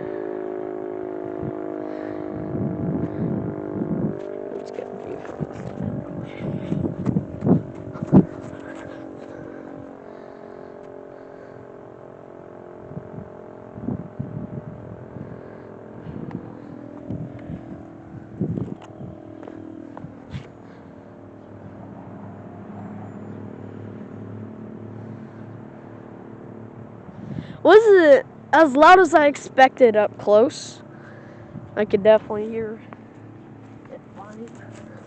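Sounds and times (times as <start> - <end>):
rotating siren chord: 0.0 - 35.0
wind knocking on microphone: 5.3 - 8.8.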